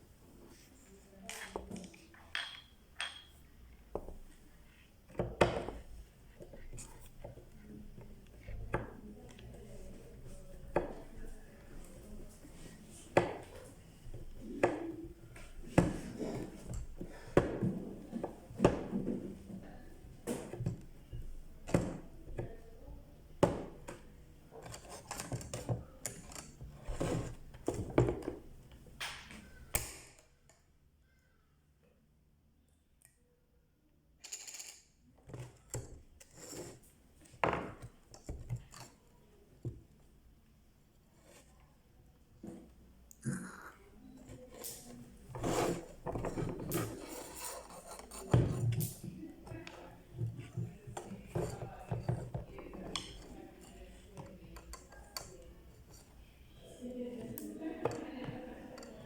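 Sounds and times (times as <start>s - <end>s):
clinks and knocks of tools: 1.3s - 4.1s, 34.2s - 39.0s
tool scraping on work surface: 45.3s - 48.6s.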